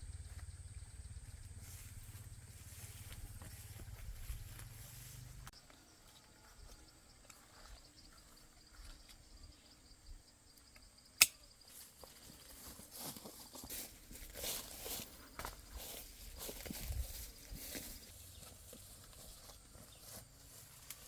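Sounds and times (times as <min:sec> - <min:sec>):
insects chirping: 0:00.0 - 0:21.0
footsteps through dry leaves: 0:01.6 - 0:05.5, 0:11.9 - 0:21.0
sharp snap: 0:11.2 - 0:11.4.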